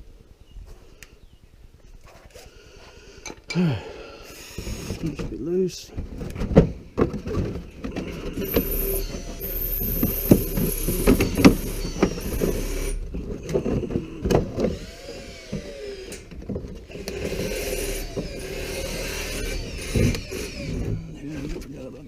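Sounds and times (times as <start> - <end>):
power tool whirring: 3.9 - 5.2, 7.8 - 21.7.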